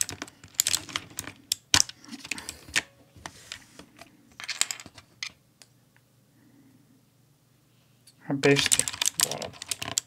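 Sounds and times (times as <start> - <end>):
mechanical keyboard clicks: 8.5 - 10.0.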